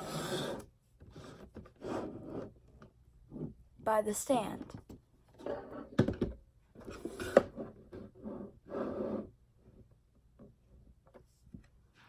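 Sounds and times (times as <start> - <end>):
rubbing and scraping of a prop: 0.0 - 3.6, 6.8 - 9.8.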